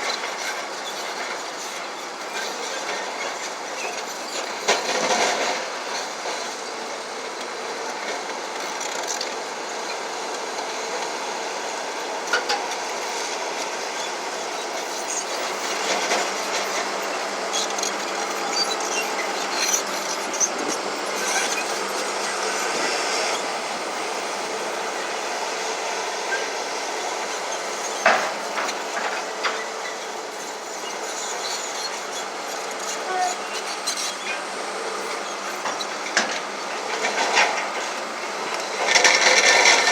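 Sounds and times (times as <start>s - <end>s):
tracks clanking and squealing: 0.0s - 6.7s, 11.7s - 39.9s
diesel engine running: 10.6s - 39.9s.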